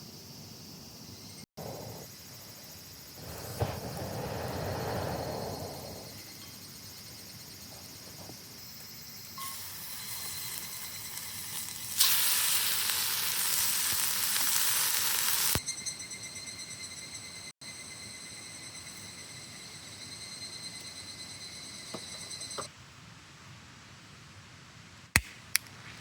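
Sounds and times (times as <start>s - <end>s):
sizzling hiss: 1.1s - 15.6s.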